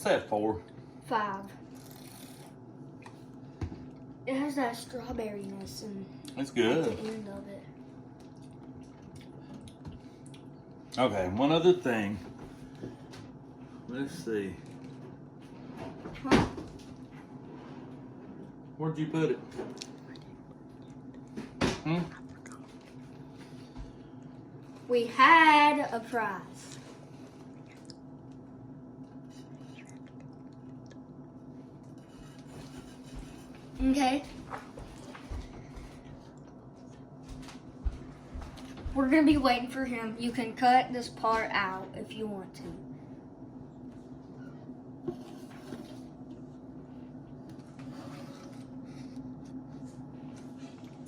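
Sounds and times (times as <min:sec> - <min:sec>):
low electrical hum: 0:00.0 - 0:51.0
faint rustles and knocks: 0:31.9 - 0:39.0.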